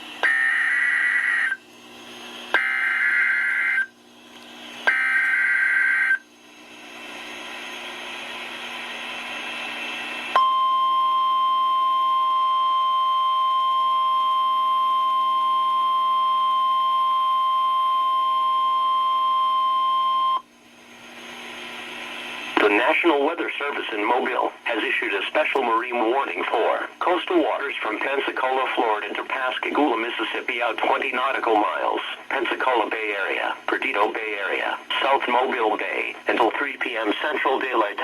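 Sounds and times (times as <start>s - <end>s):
steady warning alarm tone: 0.2s - 1.6s, 2.5s - 4.0s, 4.8s - 6.3s, 10.3s - 20.5s
radio hiss: 21.6s - 38.0s.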